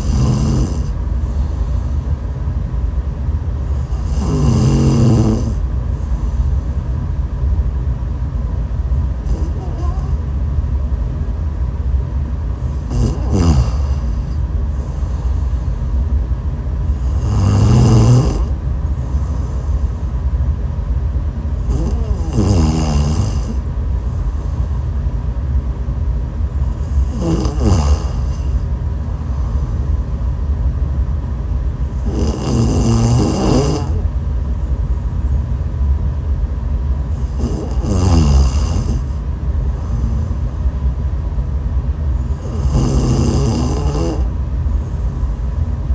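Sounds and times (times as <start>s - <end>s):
woman snoring: 0.0s - 1.6s, 3.7s - 5.6s, 9.2s - 10.2s, 12.8s - 15.6s, 17.0s - 19.7s, 21.6s - 23.7s, 26.8s - 28.6s, 32.0s - 34.0s, 37.2s - 39.2s, 42.2s - 44.3s
steady low rumble: 0.0s - 45.9s.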